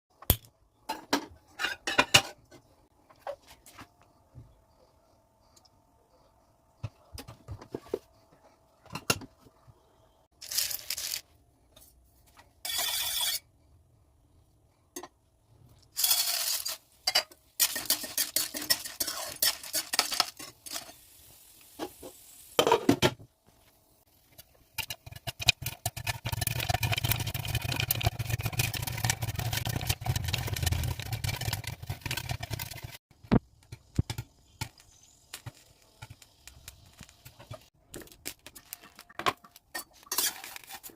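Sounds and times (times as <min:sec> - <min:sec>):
cookware clinks and scrapes: 0:00.9 - 0:02.6, 0:16.0 - 0:21.0, 0:39.4 - 0:40.9
popcorn crackling in a pan: 0:10.4 - 0:11.4, 0:15.9 - 0:22.6, 0:24.1 - 0:40.9.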